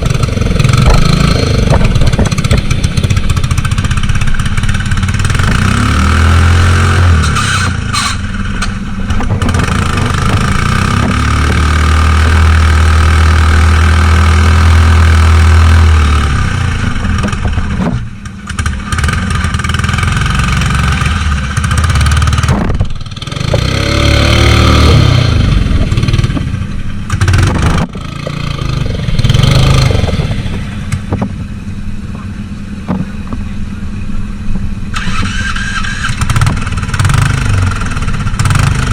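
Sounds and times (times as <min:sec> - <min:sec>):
mower engine revving: 0:00.0 - 0:26.5, 0:27.1 - 0:31.2, 0:34.9 - 0:38.9.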